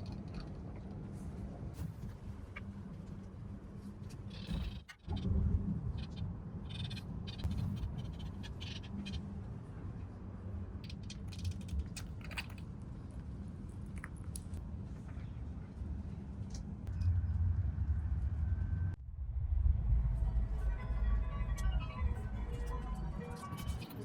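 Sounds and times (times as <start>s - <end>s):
train rumble: 14.9s - 24.0s.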